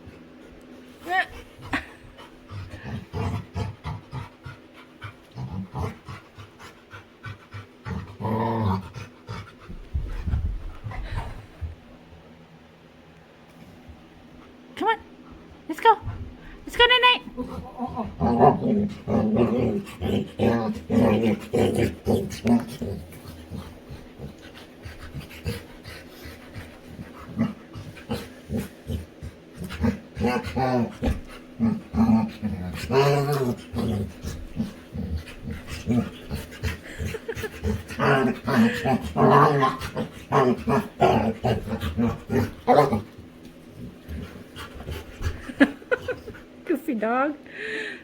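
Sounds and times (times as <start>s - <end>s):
dog panting: 0.0s - 8.2s, 22.3s - 46.5s
dog grumbling: 1.0s - 9.7s, 17.2s - 46.4s.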